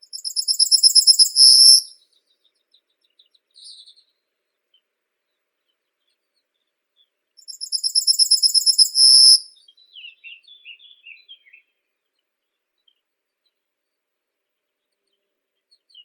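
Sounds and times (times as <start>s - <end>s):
songbird trilling: 0.0s - 1.9s, 7.4s - 11.5s.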